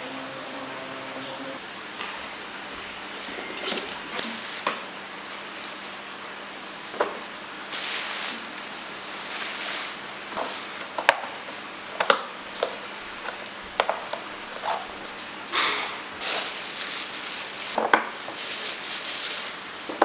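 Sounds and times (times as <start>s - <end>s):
plastic rustling: 3.1s - 6.4s, 7.7s - 11.5s, 16.2s - 20.0s.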